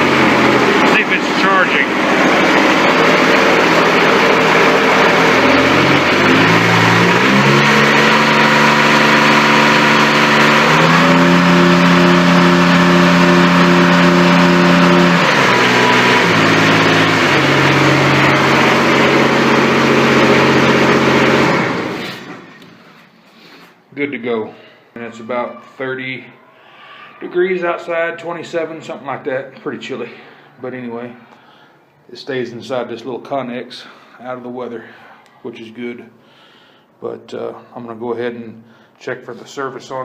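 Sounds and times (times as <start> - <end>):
diesel engine revving and idling: 0.0 - 22.6.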